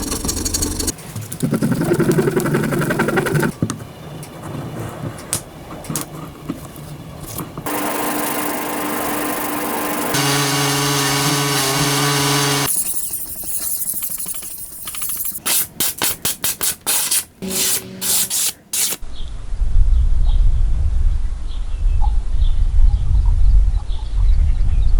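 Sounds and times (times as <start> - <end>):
quick rubbing strokes: 0.0 - 1.1, 12.7 - 19.0
power tool motor humming: 7.7 - 12.7, 17.4 - 19.0.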